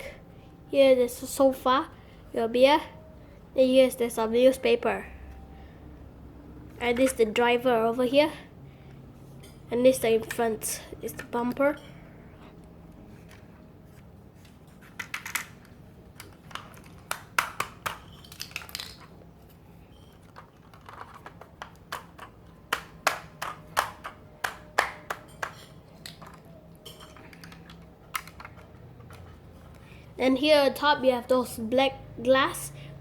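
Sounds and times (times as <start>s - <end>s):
plastic toy bricks clicking: 14.9s - 19.2s, 20.2s - 29.2s.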